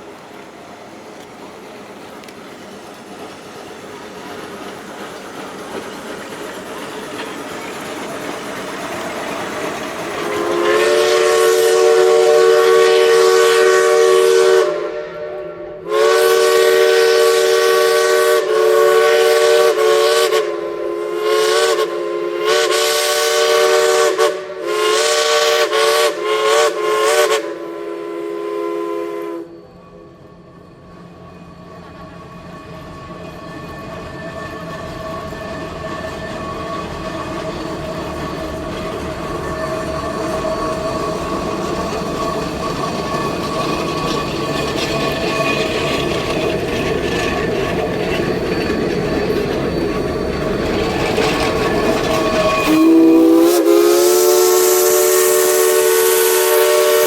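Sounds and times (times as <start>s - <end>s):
steam hiss: 0.0s - 57.0s
steam locomotive whistle blasts: 10.2s - 38.4s, 48.6s - 57.0s.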